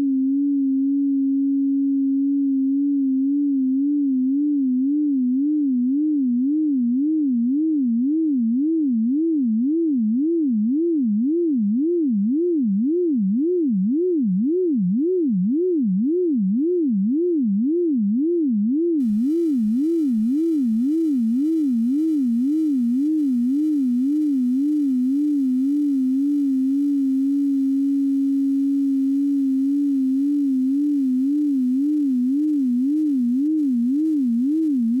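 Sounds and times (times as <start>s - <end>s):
warbling pure tone: 19.0s - 35.0s.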